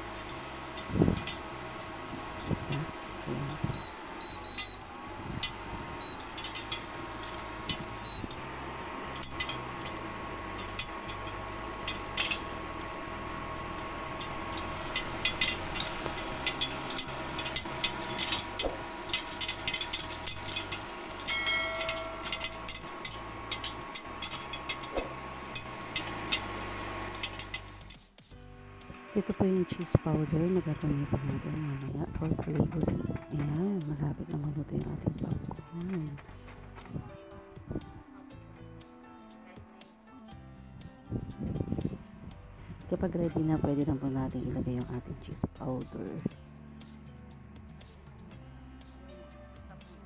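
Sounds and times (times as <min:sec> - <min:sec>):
popcorn popping in a pan: 0:00.0 - 0:28.0, 0:28.8 - 0:37.1.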